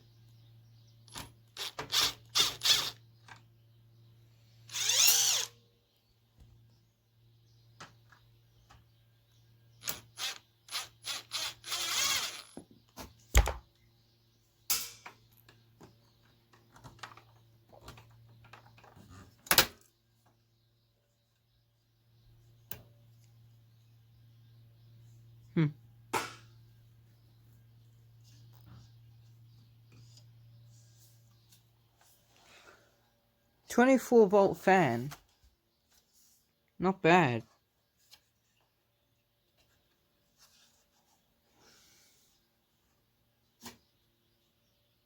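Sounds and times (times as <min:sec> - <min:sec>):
drill whirring: 0:01.6 - 0:03.0, 0:04.7 - 0:05.6, 0:09.8 - 0:12.6.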